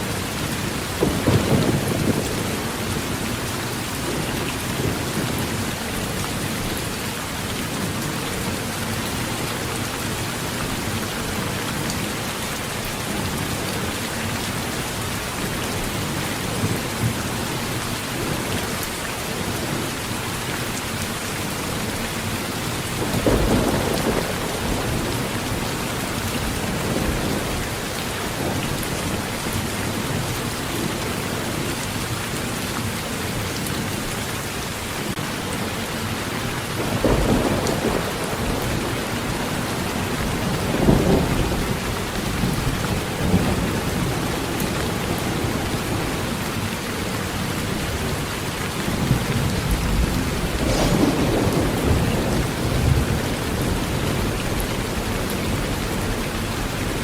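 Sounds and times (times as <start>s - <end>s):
low rumble of thunder: 0.0s - 6.8s, 22.8s - 31.6s, 36.8s - 46.5s, 48.8s - 56.7s
heavy rain on a tin roof: 0.0s - 57.0s.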